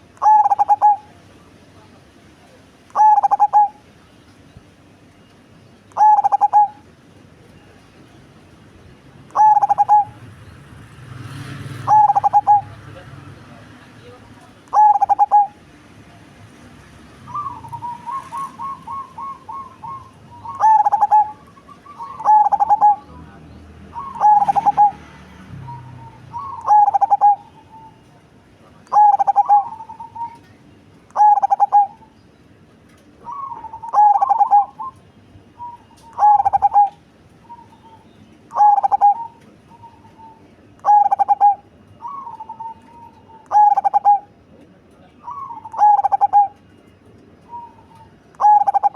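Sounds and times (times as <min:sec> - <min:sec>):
dove cooing: 0:00.2 - 0:01.2, 0:02.9 - 0:03.8, 0:05.9 - 0:06.9, 0:09.3 - 0:10.2, 0:11.8 - 0:12.8, 0:14.7 - 0:15.6, 0:17.3 - 0:28.2, 0:28.8 - 0:30.5, 0:31.1 - 0:32.2, 0:33.2 - 0:35.0, 0:35.6 - 0:44.4, 0:45.2 - 0:46.6, 0:47.4 - 0:48.9.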